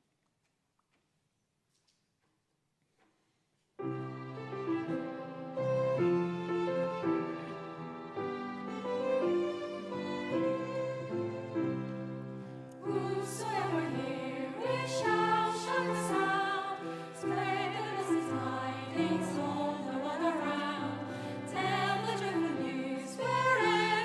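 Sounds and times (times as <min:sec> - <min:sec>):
hymn sung with vibrato: 0:12.8 - 0:24.0.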